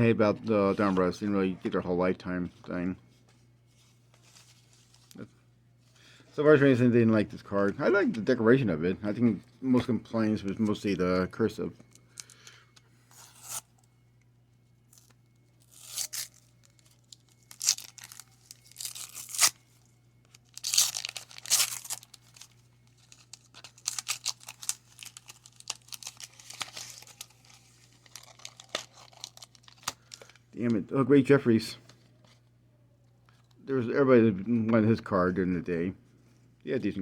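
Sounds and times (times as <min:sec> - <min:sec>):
wax paper pack tearing and crinkling: 0:13.1 - 0:13.7, 0:14.9 - 0:19.6, 0:20.4 - 0:30.4.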